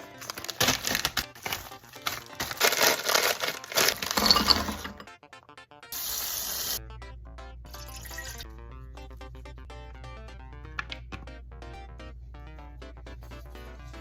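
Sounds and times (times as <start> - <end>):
plastic packaging crinkling: 0.0 - 5.0
background music: 0.0 - 14.0.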